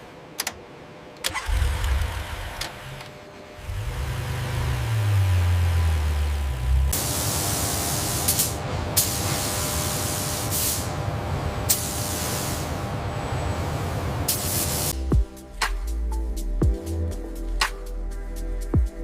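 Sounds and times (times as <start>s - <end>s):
loud spraying hiss: 7.0s - 10.9s, 11.7s - 12.7s, 14.3s - 15.0s
low electronic beats: 15.0s - 19.0s.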